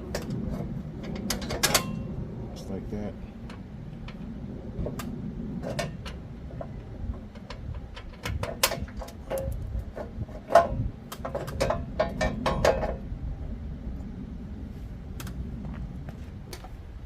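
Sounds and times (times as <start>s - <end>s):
clicks and knocks of bolts: 4.9s - 13.0s.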